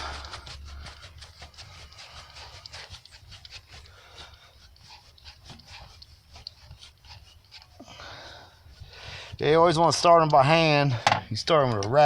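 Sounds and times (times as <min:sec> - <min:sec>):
small clicks and scraping of hands: 0:00.0 - 0:07.9.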